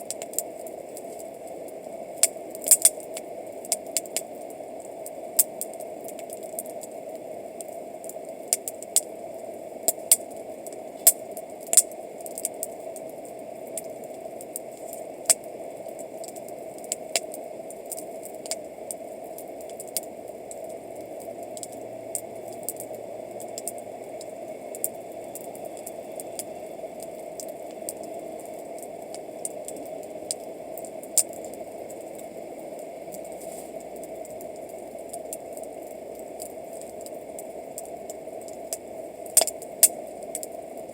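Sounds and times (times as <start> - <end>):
campfire crackling and popping: 0.0 - 40.9.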